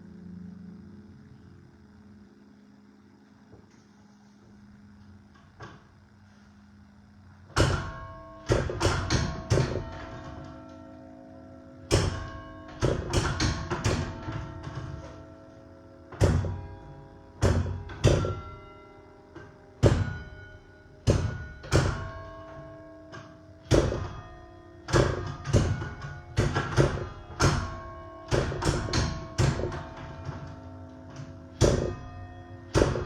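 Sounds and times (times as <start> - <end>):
church bells playing a melody: 7.8 - 33.0.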